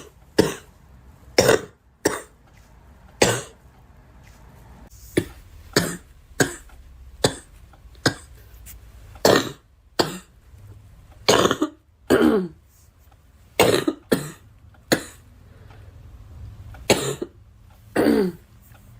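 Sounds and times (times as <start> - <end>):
girl coughing: 0.0 - 0.7, 1.4 - 2.3, 3.2 - 3.6, 5.2 - 6.6, 9.2 - 10.3, 11.3 - 12.6, 13.6 - 15.2, 16.9 - 17.3, 18.0 - 18.4.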